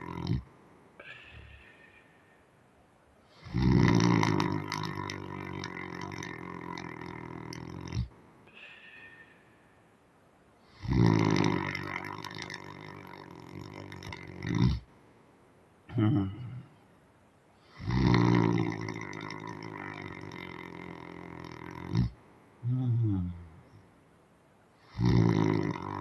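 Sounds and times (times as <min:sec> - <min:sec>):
man snoring loudly: 0:00.0 - 0:00.5, 0:03.4 - 0:08.1, 0:10.7 - 0:14.9, 0:17.7 - 0:23.6, 0:24.8 - 0:26.0
faint breath: 0:01.0 - 0:03.6, 0:08.5 - 0:10.0.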